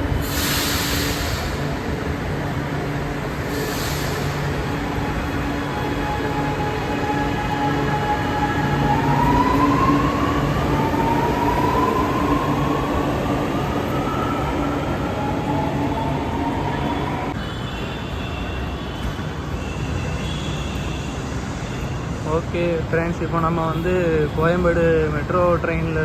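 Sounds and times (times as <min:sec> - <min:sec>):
train rumble: 0:00.0 - 0:17.4.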